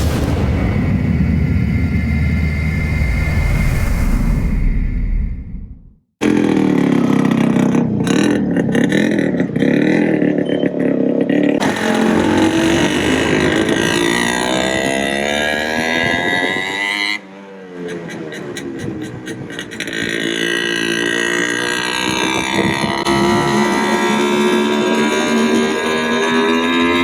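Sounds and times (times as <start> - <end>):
two-stroke motorcycle engine revving: 6.2 - 27.0.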